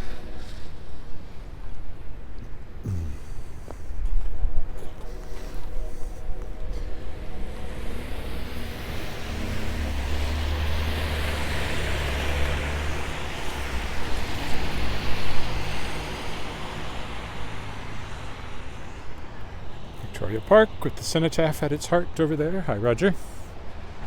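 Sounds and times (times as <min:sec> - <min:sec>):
road noise: 0:00.0 - 0:24.0
vehicle passing: 0:06.9 - 0:18.2.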